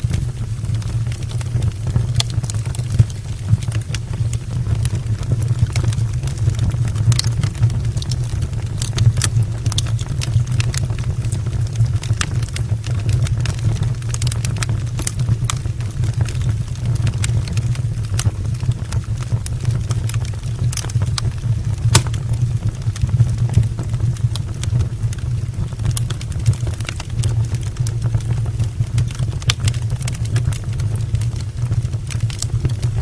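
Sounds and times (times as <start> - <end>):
fire crackling and popping: 0.0 - 33.0
low rumble of fire: 0.0 - 33.0.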